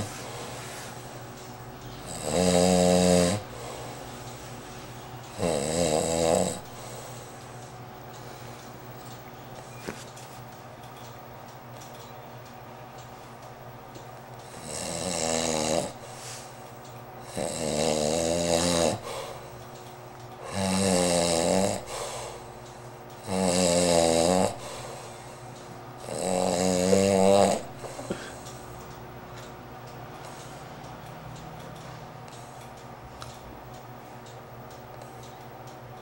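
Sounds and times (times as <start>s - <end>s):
man snoring: 2.0s - 4.0s, 5.3s - 7.0s, 14.5s - 16.0s, 17.2s - 19.4s, 20.4s - 22.3s, 23.2s - 25.0s, 26.0s - 28.4s.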